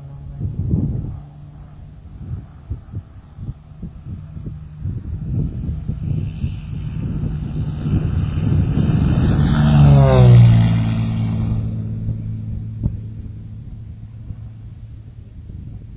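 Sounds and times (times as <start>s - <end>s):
propeller plane flyby: 0.0s - 15.9s.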